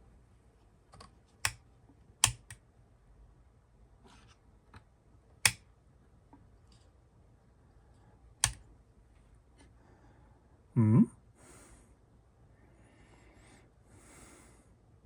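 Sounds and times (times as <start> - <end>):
sharp clicks and ticks: 2.2 - 2.6.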